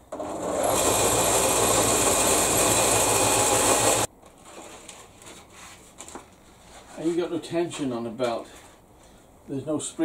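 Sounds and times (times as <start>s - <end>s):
belt sander running: 0.1s - 4.1s.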